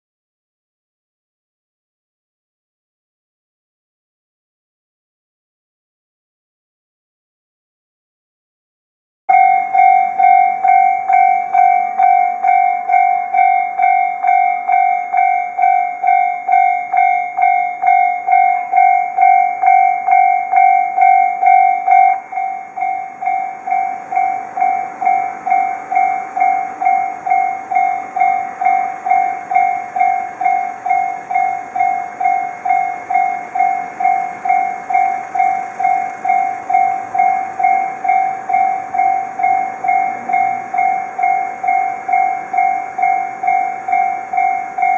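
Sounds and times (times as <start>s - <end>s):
level crossing bell ringing: 9.3s - 44.9s
train rushing past: 9.3s - 44.9s.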